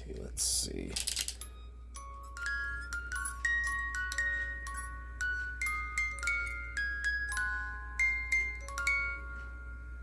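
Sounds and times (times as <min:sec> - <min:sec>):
music box playing: 0:01.1 - 0:10.0.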